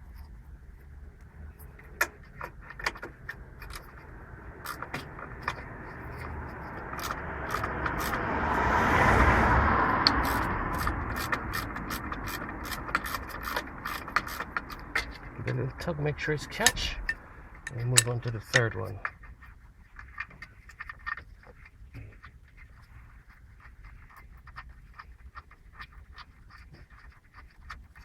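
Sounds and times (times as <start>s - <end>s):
vehicle passing: 1.4s - 19.1s
hand tools clicking on metal: 10.0s - 19.2s.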